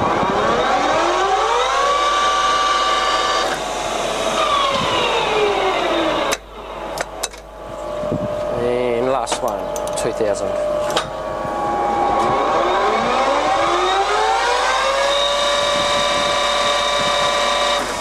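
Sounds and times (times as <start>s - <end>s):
lathe spindle whining: 0.0s - 18.0s.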